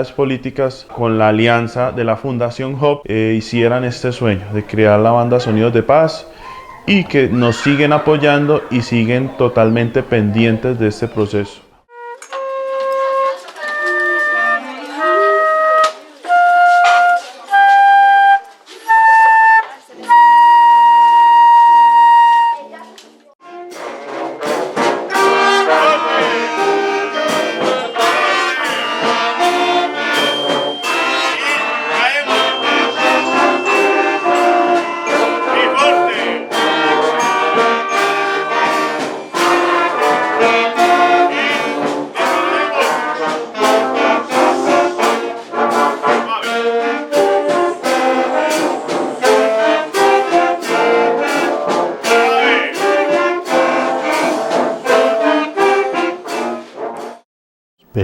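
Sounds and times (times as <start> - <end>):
drums beating: 3.4 - 11.5, 23.4 - 56.4
trumpets and trombones: 3.4 - 19.4, 23.4 - 57.2
brass band playing: 3.4 - 22.8, 23.4 - 57.2.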